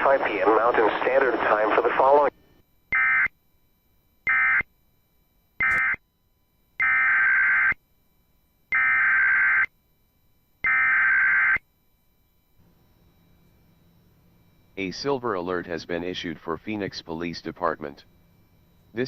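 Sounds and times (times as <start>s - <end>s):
buzzy two-tone data bursts: 5.6s - 6.0s.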